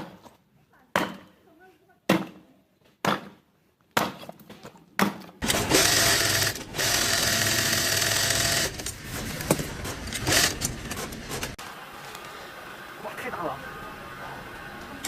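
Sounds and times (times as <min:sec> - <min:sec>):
small electric motor whirring: 0:05.4 - 0:08.9.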